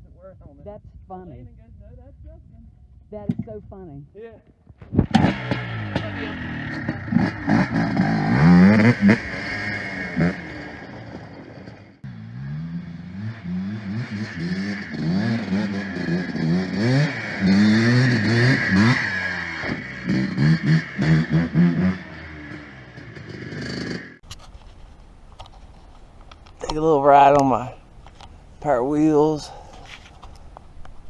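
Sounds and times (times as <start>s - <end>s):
small engine revving: 4.9s - 24.2s.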